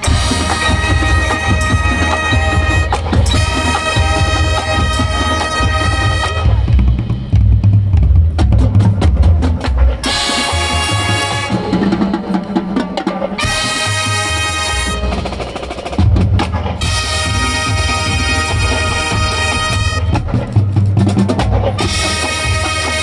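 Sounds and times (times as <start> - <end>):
brass and wind chords: 0.0 - 7.6, 10.0 - 20.7, 21.7 - 23.0
snare and bass drums: 0.0 - 23.0.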